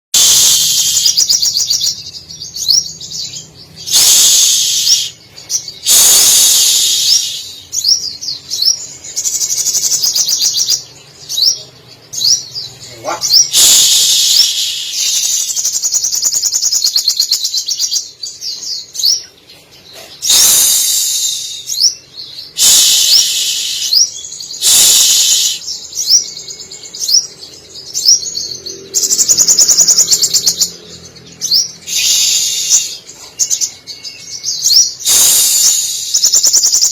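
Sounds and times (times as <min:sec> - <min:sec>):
sunbird rapid high trilling: 0:00.2 - 0:01.9, 0:02.6 - 0:10.8, 0:13.0 - 0:17.2, 0:20.2 - 0:26.3, 0:31.4 - 0:33.1, 0:34.6 - 0:36.9
whistled slides and chirps: 0:00.2 - 0:01.9, 0:03.8 - 0:08.1, 0:13.3 - 0:18.0, 0:20.2 - 0:26.2, 0:31.8 - 0:36.9.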